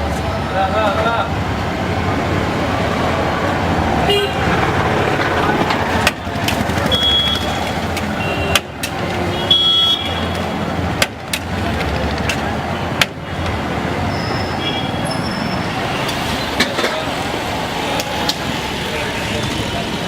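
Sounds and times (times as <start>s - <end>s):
street traffic din: 0.0s - 20.0s
sharp clicks and knocks: 5.2s - 6.9s, 7.8s - 9.2s, 10.3s - 13.6s.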